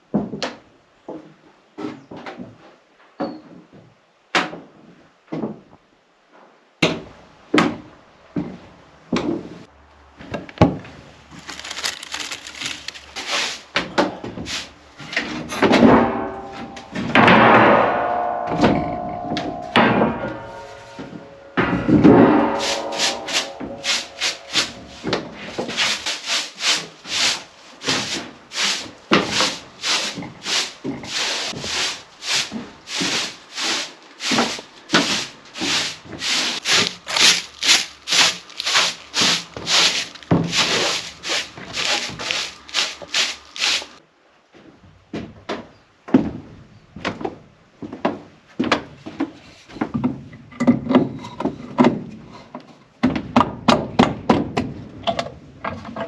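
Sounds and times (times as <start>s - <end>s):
hand tool working wood: 11.4s - 15.4s, 20.3s - 44.0s.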